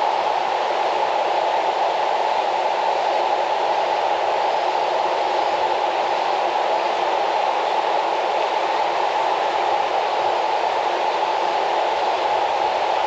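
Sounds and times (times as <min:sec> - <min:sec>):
river rushing in flood: 0:00.0 - 0:13.0.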